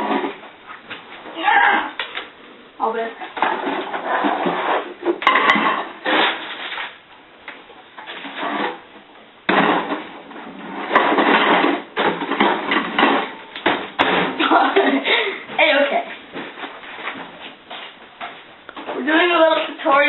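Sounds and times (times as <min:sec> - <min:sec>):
household items clattering and rustling: 0:09.5 - 0:17.6.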